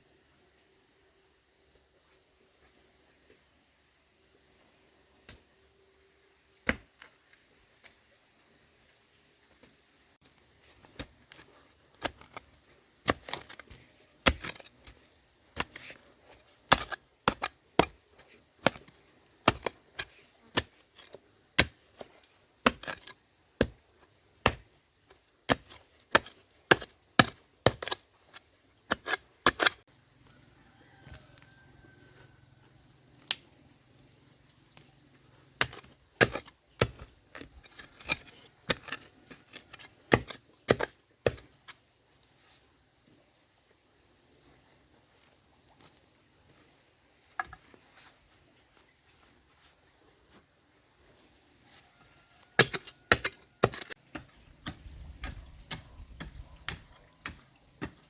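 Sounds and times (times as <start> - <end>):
chopping bamboo: 16.7 - 21.8, 24.4 - 24.8, 35.6 - 41.6, 52.6 - 58.0.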